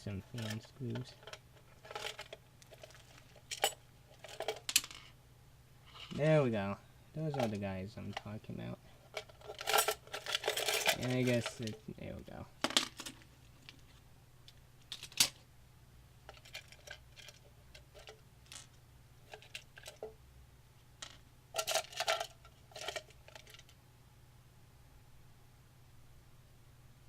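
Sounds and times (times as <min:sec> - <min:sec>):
faint low hum: 0:00.0 - 0:27.0
metal screws clicking and clinking: 0:00.4 - 0:05.1, 0:09.1 - 0:11.7, 0:21.0 - 0:23.7.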